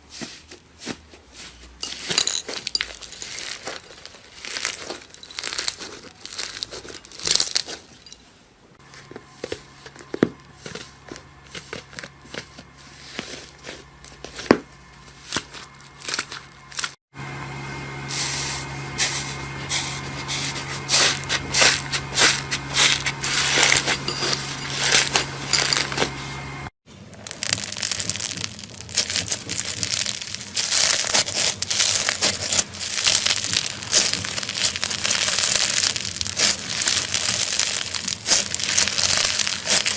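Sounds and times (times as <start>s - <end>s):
slime crackling and popping: 3.1s - 7.6s, 27.1s - 39.9s.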